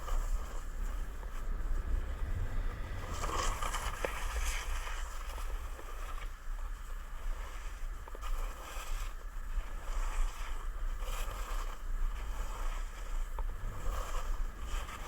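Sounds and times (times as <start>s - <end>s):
wind buffeting microphone: 0.0s - 6.0s, 13.2s - 15.0s.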